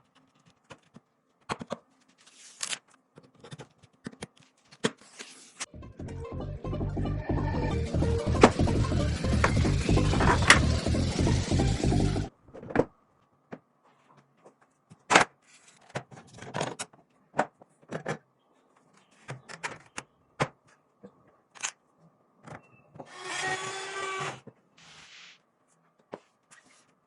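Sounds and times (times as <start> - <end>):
background music: 5.7 - 12.3.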